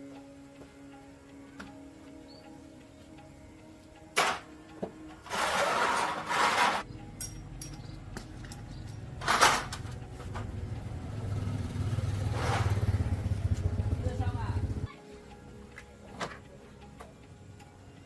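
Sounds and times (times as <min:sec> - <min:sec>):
motorcycle engine starting and idling: 0:07.8 - 0:14.9.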